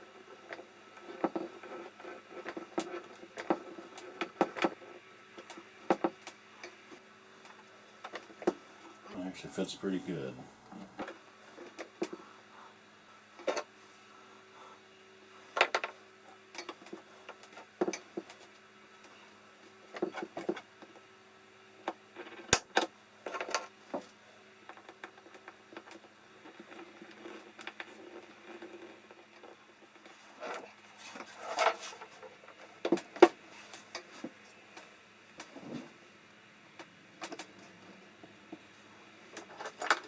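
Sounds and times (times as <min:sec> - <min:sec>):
faint steady hum: 0:03.5 - 0:17.4.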